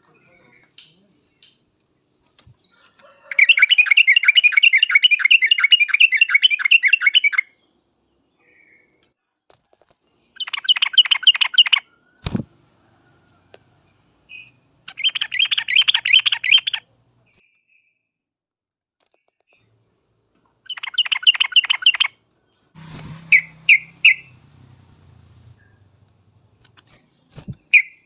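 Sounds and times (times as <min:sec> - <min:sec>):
bulbul singing rattling notes: 0:22.8 - 0:28.0.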